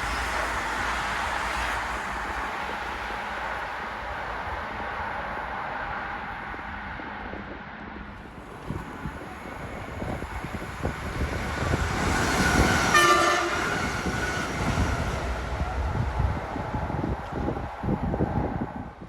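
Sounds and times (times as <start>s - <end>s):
train wheels rumbling on rail: 0.0s - 19.0s
train horn blast: 12.5s - 14.8s.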